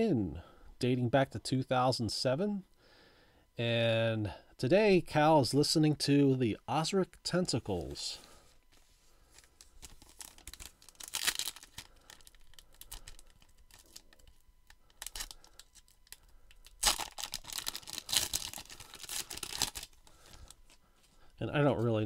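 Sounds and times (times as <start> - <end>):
wrapper tearing and crinkling: 9.4 - 20.8.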